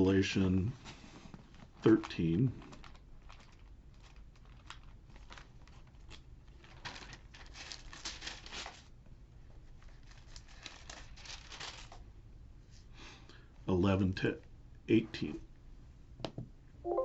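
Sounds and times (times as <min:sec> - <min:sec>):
thin pages rustling: 0:00.8 - 0:08.9, 0:09.8 - 0:12.0.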